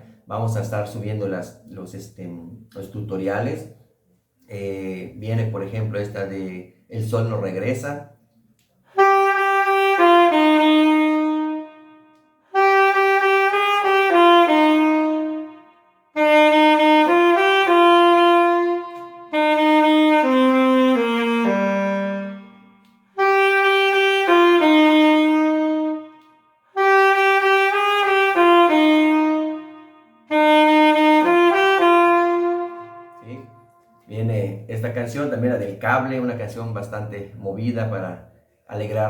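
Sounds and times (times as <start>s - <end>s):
alto saxophone melody: 8.9s - 34.2s.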